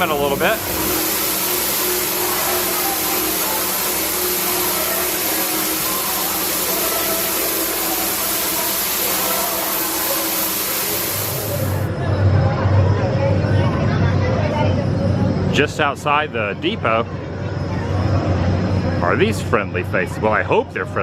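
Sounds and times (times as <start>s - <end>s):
steam hissing: 0.0s - 11.9s
murmur of people: 0.0s - 21.0s.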